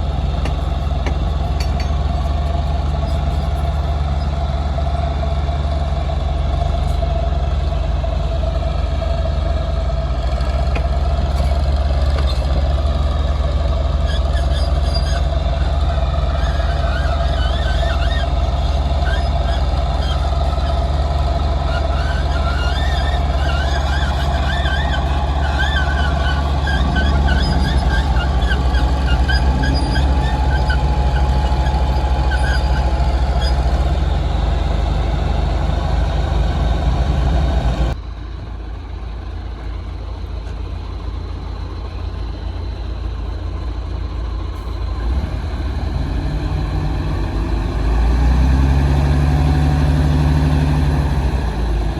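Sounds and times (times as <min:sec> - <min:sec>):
diesel machinery engine drone: 0:00.0 - 0:51.9
high wavering squeaks: 0:16.3 - 0:33.8.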